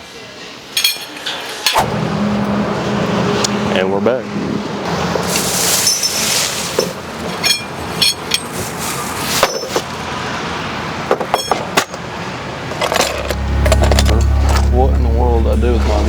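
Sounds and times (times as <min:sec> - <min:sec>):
metal tools rummaged through: 0:05.2 - 0:10.0, 0:12.8 - 0:14.7
sharp metallic knocks and clinks: 0:05.8 - 0:08.6, 0:11.1 - 0:12.0.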